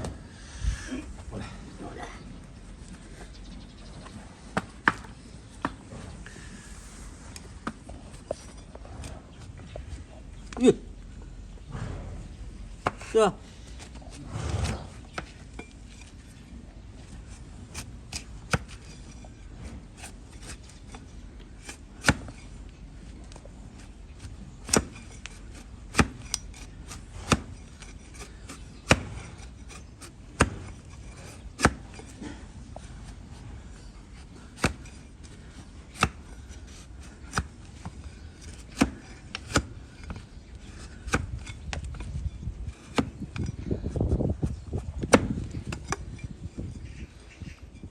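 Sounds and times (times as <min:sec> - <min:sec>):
blade cutting hoof: 0:12.8 - 0:16.4, 0:17.0 - 0:46.8.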